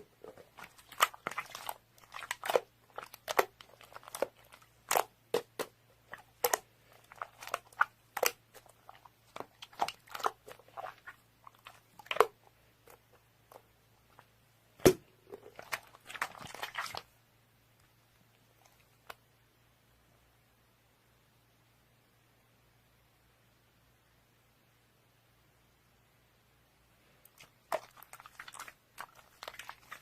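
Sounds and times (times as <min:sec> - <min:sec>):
person chewing crunchy food: 0:00.0 - 0:13.0, 0:27.3 - 0:30.0.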